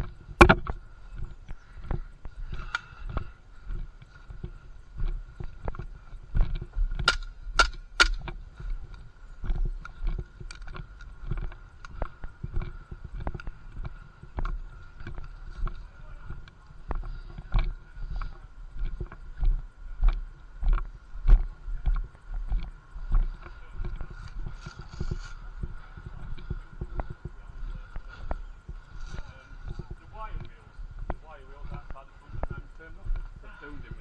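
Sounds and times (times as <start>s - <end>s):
faint steady whine: 0.0s - 34.0s
kit bumping with footsteps: 0.0s - 34.0s
sharp cracks: 7.0s - 8.3s.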